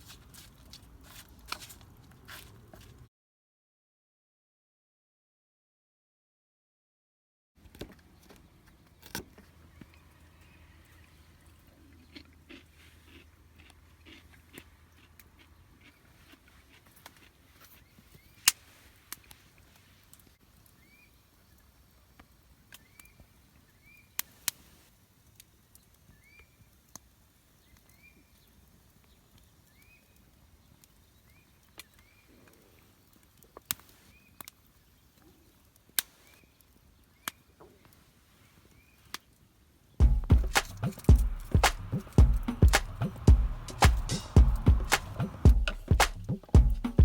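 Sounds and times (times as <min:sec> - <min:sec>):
music: 0:40.0 - 0:47.0.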